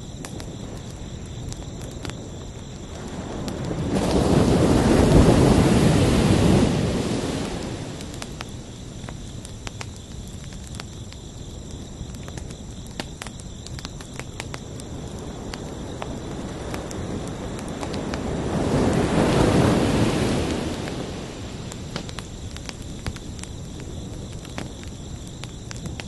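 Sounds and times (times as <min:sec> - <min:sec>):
crickets chirping: 0:00.0 - 0:26.0
ocean waves breaking: 0:03.2 - 0:08.2, 0:18.1 - 0:21.7.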